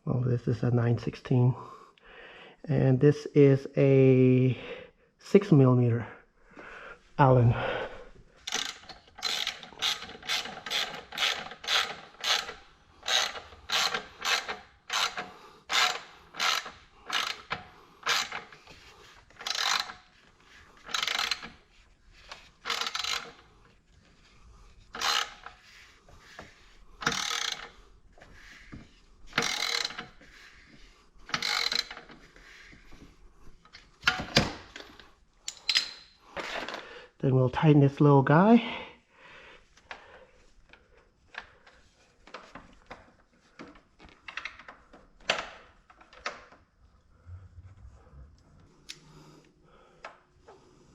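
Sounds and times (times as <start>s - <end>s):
ratchet wrench clicking: 8.4s - 18.7s, 19.4s - 20.0s, 20.8s - 21.6s, 22.6s - 23.4s, 25.0s - 25.6s, 27.0s - 27.8s, 29.4s - 30.2s, 31.3s - 32.1s.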